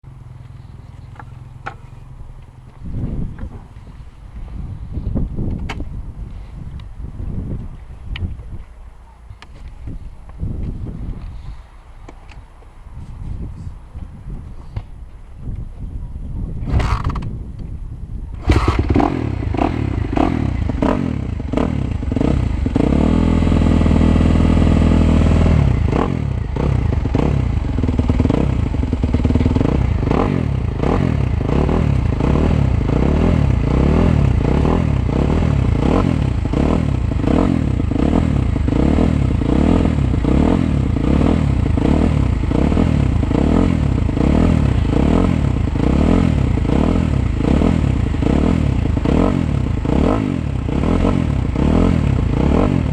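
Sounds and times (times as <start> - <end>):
motocross bike engine revving: 18.4 - 52.9.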